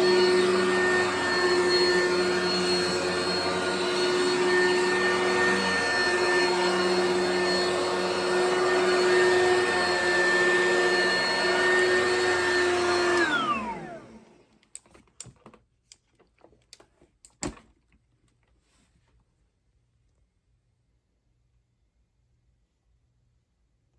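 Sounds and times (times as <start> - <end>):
vacuum cleaner running: 0.0 - 14.5.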